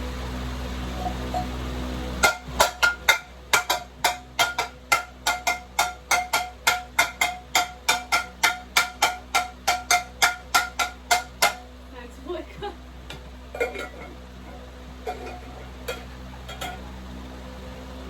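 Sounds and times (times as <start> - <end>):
metal clanging: 2.2 - 11.7, 13.1 - 16.9.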